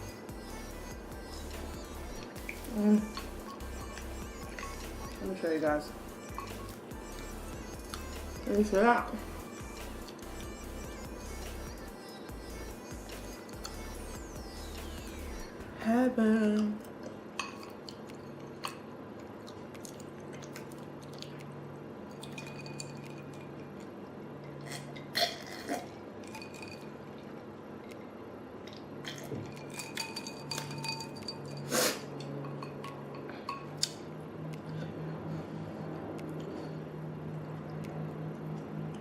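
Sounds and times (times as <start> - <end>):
utensils clinking against dishes: 3.0 - 3.7, 6.2 - 6.6, 22.1 - 23.8, 24.4 - 27.2, 29.0 - 33.9.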